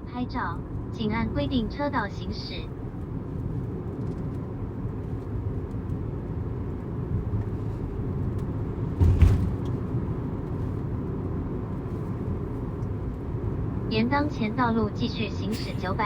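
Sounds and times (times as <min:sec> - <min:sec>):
car road and engine rumble: 0:00.0 - 0:16.0
short thump: 0:08.9 - 0:09.8.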